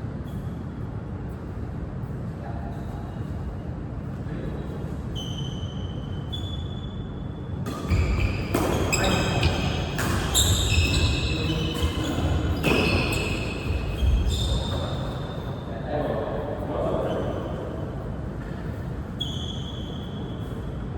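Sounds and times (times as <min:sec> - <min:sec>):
shoes squeaking on court floor: 0:05.1 - 0:15.8, 0:16.5 - 0:20.9.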